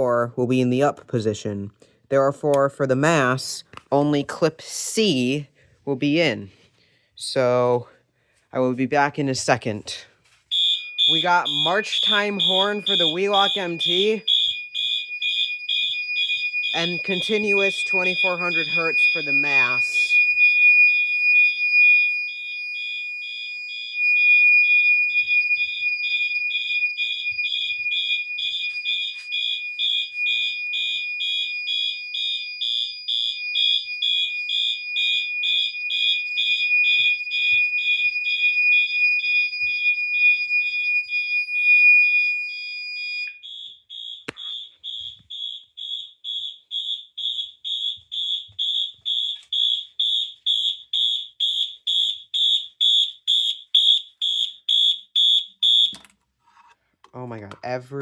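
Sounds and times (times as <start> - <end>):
continuous fire alarm tone: 4.3 - 8.4, 9.0 - 56.2
pulsing fire alarm horn: 10.5 - 56.0.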